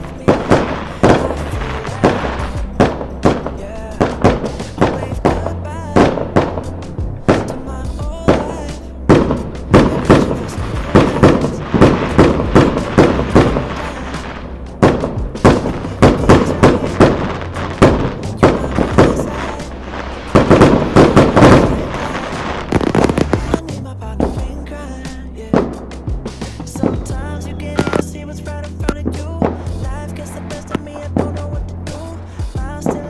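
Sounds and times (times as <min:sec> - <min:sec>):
fireworks bangs and crackles: 0:00.0 - 0:23.6.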